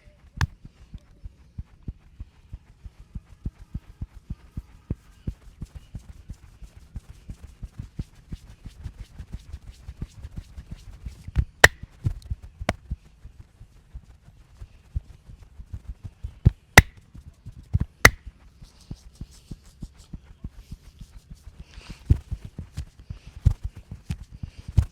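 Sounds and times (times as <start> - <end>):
sharp snaps: 11.6 - 11.8, 16.8 - 17.0.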